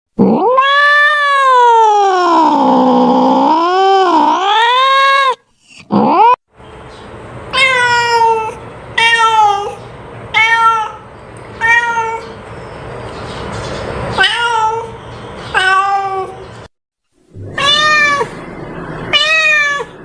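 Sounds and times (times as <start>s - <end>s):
cat meowing: 0.2s - 6.4s, 7.5s - 11.0s, 11.6s - 12.4s, 14.2s - 16.4s, 17.4s - 18.4s, 19.1s - 20.0s.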